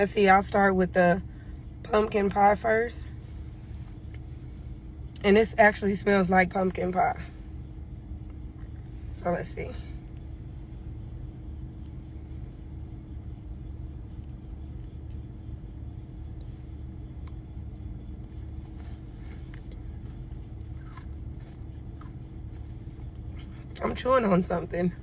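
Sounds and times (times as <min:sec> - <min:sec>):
constant hum: 0:00.0 - 0:25.0
steady low rumble: 0:00.0 - 0:25.0.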